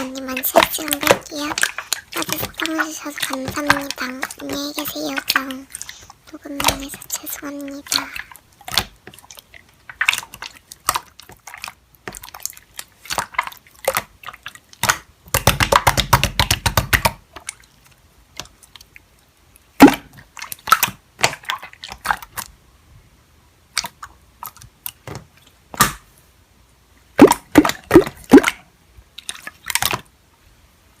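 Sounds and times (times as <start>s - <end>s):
slime squishing and popping: 8.6s - 17.6s, 19.8s - 22.5s, 27.2s - 28.6s.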